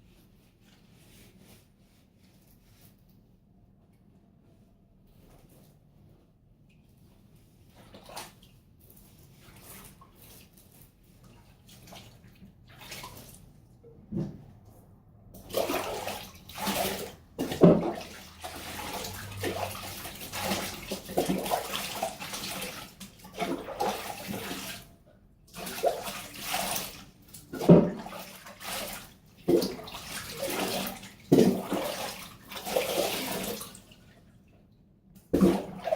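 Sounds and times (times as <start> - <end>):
bath water splashing: 7.7 - 13.6, 15.4 - 34.2, 35.2 - 35.9.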